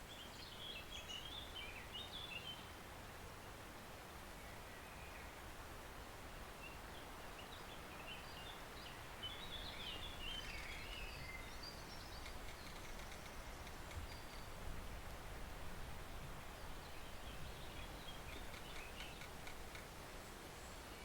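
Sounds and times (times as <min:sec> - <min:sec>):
songbird singing: 0:00.0 - 0:02.8, 0:04.3 - 0:15.2, 0:16.1 - 0:21.0.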